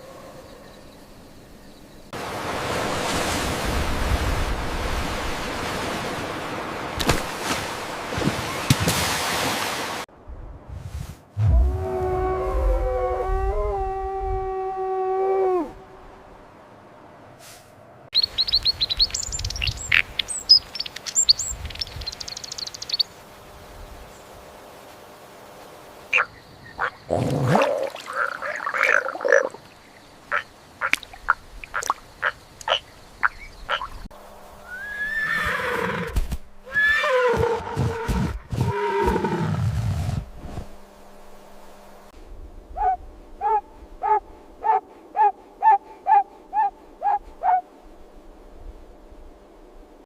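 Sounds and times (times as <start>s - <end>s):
long falling animal calls: 11.5s - 16.2s, 31.7s - 39.7s
animal calls and clicks: 18.2s - 23.0s, 28.0s - 34.1s
short evenly spaced calls: 18.2s - 23.2s, 26.1s - 27.1s, 28.0s - 34.9s.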